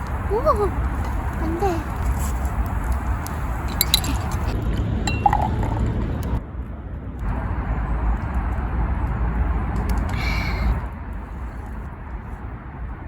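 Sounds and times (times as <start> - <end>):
road traffic rumble: 0.0 - 13.0
glass clinking: 3.7 - 4.4, 5.1 - 5.9.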